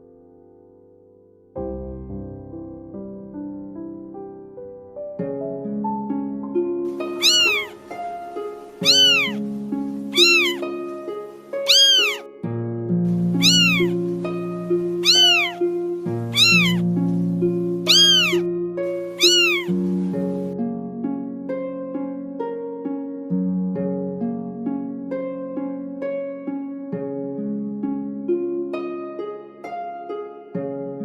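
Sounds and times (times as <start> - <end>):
cat meowing: 7.0 - 7.9, 8.8 - 9.4, 10.1 - 10.7, 11.6 - 12.3, 13.3 - 14.1, 15.0 - 15.6, 16.2 - 16.9, 17.9 - 19.8.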